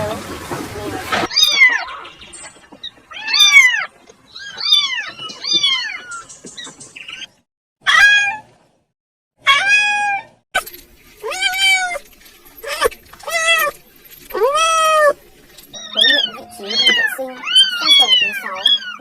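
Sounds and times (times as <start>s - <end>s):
kittens meowing: 3.1s - 6.3s, 11.2s - 12.0s, 12.6s - 19.0s.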